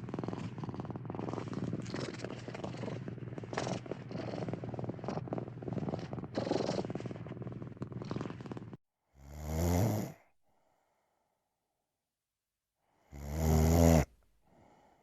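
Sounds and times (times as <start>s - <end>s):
cat purring: 0.0s - 8.8s.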